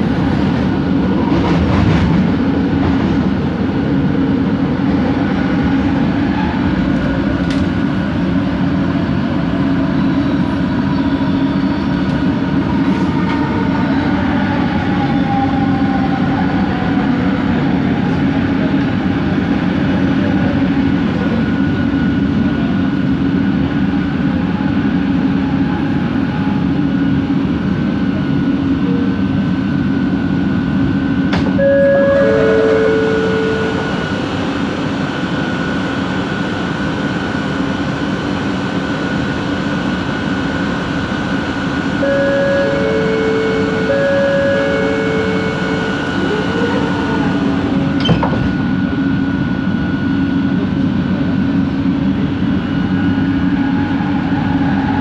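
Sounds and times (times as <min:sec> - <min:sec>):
train cabin rumble: 0:00.0 - 0:23.8, 0:25.9 - 0:55.0
short tone: 0:31.5 - 0:34.4, 0:42.0 - 0:46.8.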